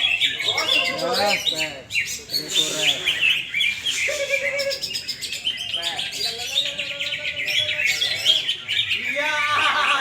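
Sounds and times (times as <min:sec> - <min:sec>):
birds chirping and trilling: 0:00.0 - 0:10.0.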